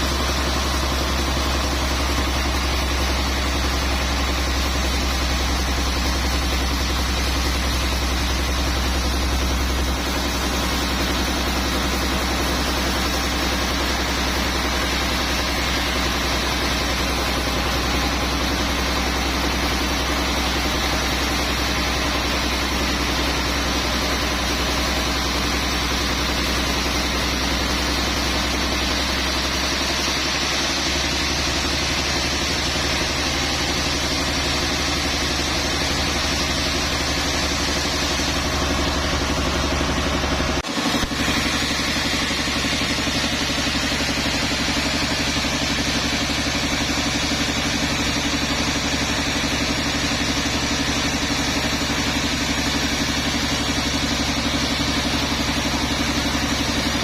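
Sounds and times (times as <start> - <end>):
machinery engine hum: 32.2 - 57.0.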